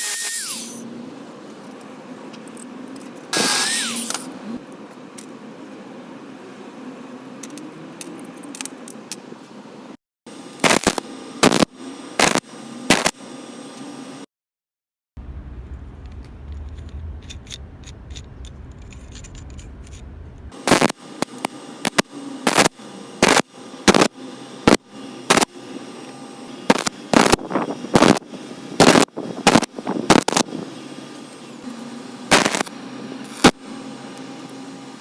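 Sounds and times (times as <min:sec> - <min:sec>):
low steady rumble: 0:15.2 - 0:20.6.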